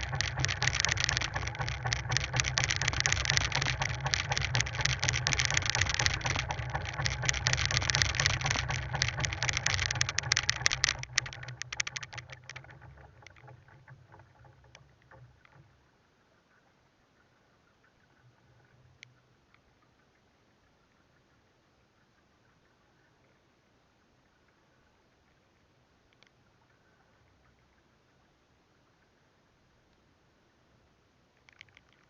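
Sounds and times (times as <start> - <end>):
dense rattle of clicks: 0.0 - 15.8
low hum: 0.0 - 30.0
water noise: 0.0 - 32.0.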